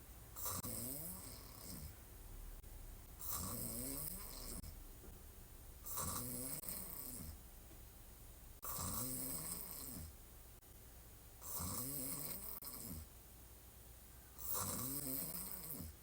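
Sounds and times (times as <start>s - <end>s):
woman snoring: 0.4s - 2.0s, 3.2s - 4.8s, 5.8s - 7.4s, 8.6s - 10.1s, 11.4s - 13.1s, 14.4s - 16.0s.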